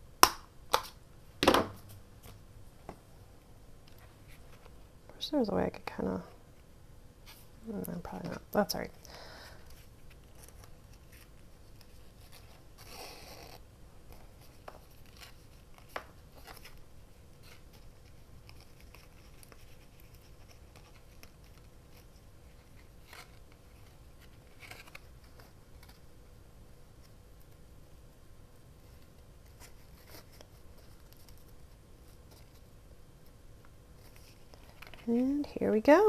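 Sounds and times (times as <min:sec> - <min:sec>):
paper rustling: 0:09.5 - 0:26.1, 0:28.8 - 0:32.7, 0:34.0 - 0:35.2.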